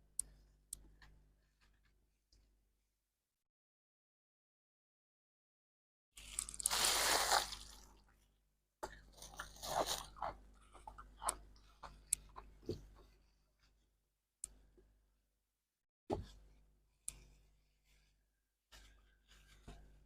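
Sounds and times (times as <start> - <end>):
ice crunching as bitten: 6.2 - 7.9, 9.1 - 11.0.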